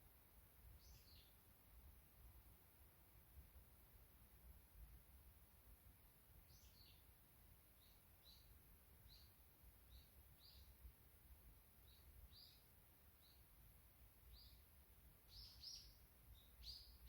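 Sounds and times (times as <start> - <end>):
small bird chirping: 0.8 - 1.4, 6.4 - 7.1, 7.8 - 10.8, 11.8 - 13.5, 14.3 - 14.7, 15.3 - 17.0.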